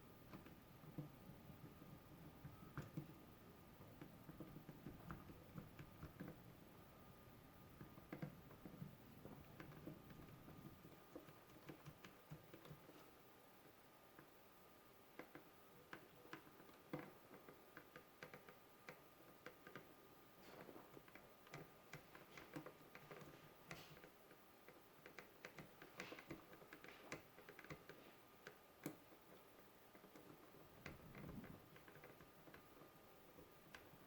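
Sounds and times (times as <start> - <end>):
faint hum: 0.0 - 34.0
small parts clicking and tapping: 7.7 - 13.2, 15.1 - 34.0.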